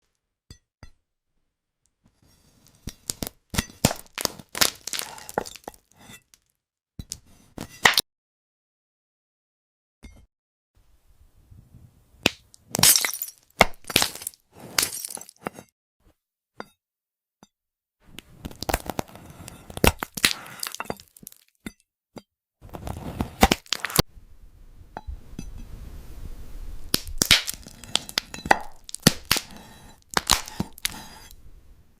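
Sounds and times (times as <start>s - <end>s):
glass cracking and crunching: 3.0s - 6.5s, 12.2s - 15.4s, 18.4s - 21.6s, 22.8s - 24.0s, 26.9s - 31.3s.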